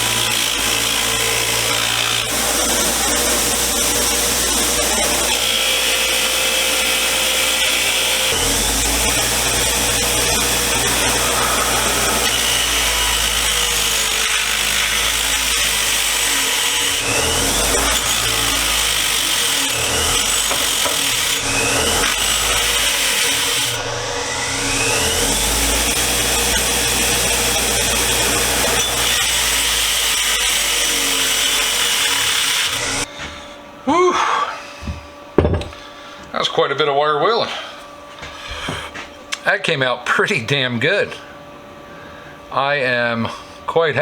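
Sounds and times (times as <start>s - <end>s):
wire wheel grinding metal: 0.0s - 33.1s
motor whine: 0.0s - 33.3s.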